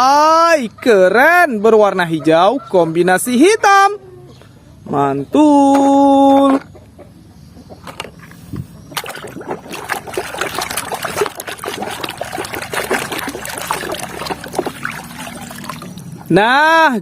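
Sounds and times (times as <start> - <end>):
water splashing and trickling: 8.8 - 16.7.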